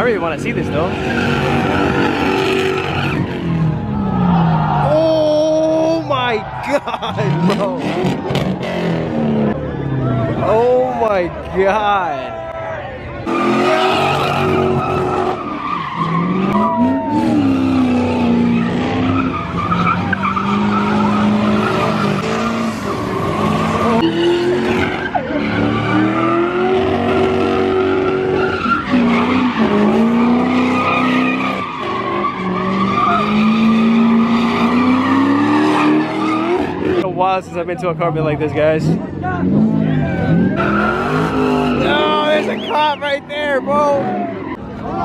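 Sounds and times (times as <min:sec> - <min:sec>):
car engine revving: 0:00.0 - 0:05.6, 0:06.8 - 0:10.5, 0:13.2 - 0:37.1, 0:37.8 - 0:44.6
car tyres screeching: 0:00.0 - 0:45.0.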